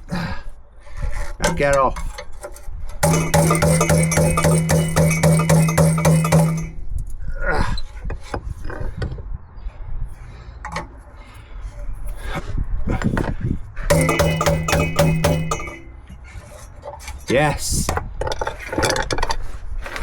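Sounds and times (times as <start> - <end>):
angle grinder cutting metal pipe: 3.0 - 6.8
metallic knocks and clicks: 3.0 - 6.8, 13.9 - 16.0.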